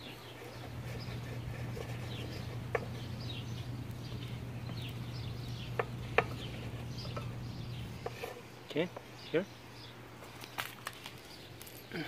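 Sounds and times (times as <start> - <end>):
birds chirping: 0.0 - 12.0
steady low hum: 0.0 - 12.0.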